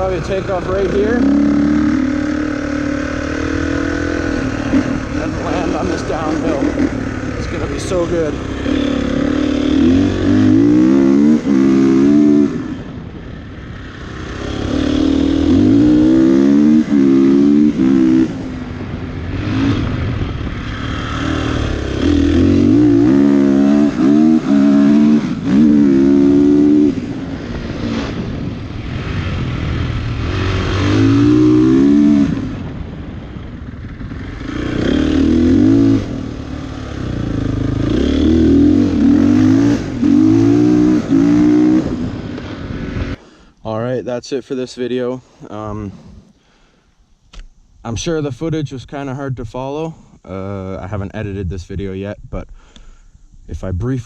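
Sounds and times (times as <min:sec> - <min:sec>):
dirt bike engine accelerating: 0:00.0 - 0:43.2.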